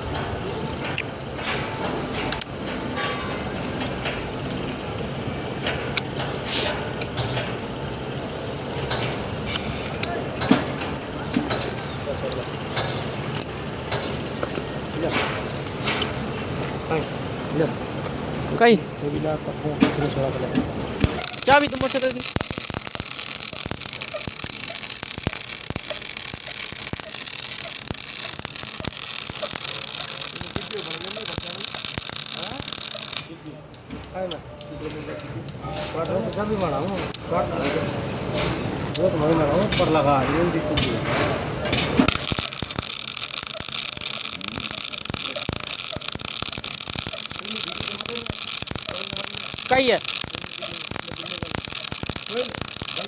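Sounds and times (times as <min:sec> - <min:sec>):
welding arc crackling: 0:00.0 - 0:33.4, 0:35.5 - 0:53.0
brief hiss: 0:06.4 - 0:06.8.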